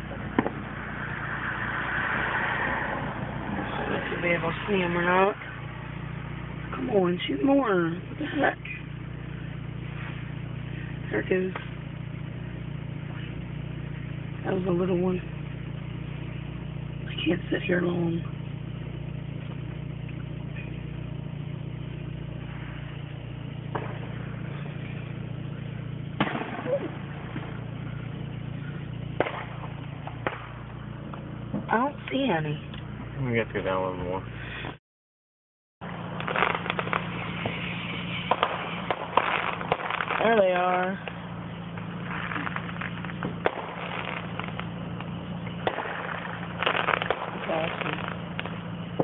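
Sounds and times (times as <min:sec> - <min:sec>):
car engine idling: 0:00.0 - 0:34.8, 0:35.8 - 0:49.0
distant firework bang: 0:00.1 - 0:03.9, 0:22.4 - 0:31.8, 0:36.2 - 0:49.0.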